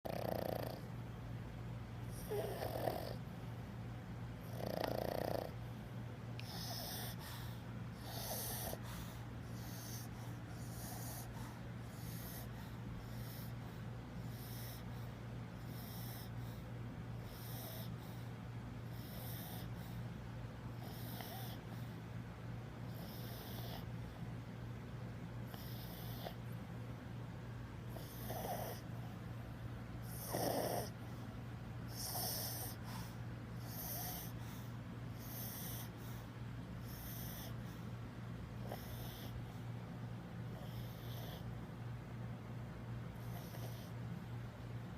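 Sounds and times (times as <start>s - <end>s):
dog snoring wheezily: 0.1s - 0.9s, 2.1s - 3.2s, 4.4s - 5.6s, 6.4s - 13.6s, 14.2s - 16.6s, 17.2s - 18.2s, 20.8s - 21.7s, 22.9s - 23.9s, 25.5s - 26.4s, 27.9s - 28.9s, 30.0s - 31.0s, 31.9s - 34.5s, 35.2s - 36.0s, 36.8s - 37.6s, 38.6s - 39.4s, 40.5s - 41.5s, 43.2s - 44.0s.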